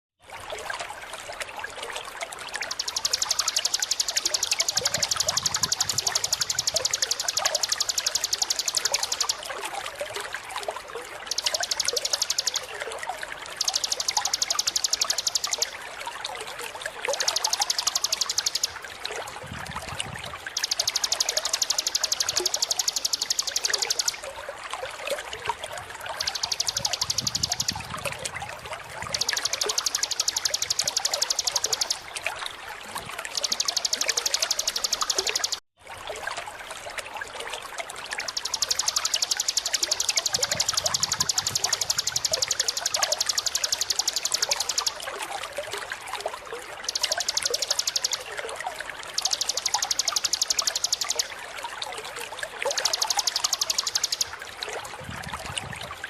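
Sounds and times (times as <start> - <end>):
rushing trickling water: 0.2 - 56.0
bird singing high-pitched trill: 2.6 - 9.6, 11.2 - 12.8, 13.6 - 15.8, 17.1 - 18.9, 20.5 - 24.3, 26.1 - 28.2, 28.9 - 32.1, 33.2 - 35.6, 38.2 - 45.2, 46.8 - 48.4, 49.2 - 51.4, 52.6 - 54.6.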